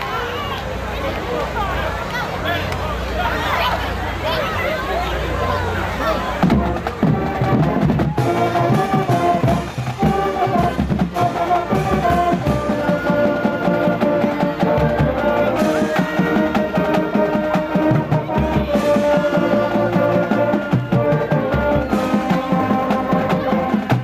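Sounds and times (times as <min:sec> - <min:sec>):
music with steady drum beat: 0:06.4 - 0:24.0.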